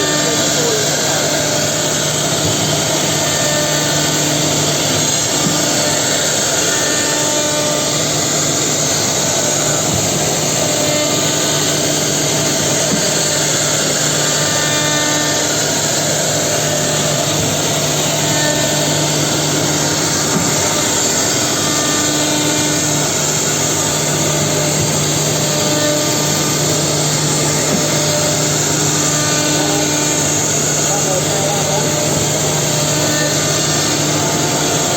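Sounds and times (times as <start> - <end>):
router milling wood: 0.0 - 34.9.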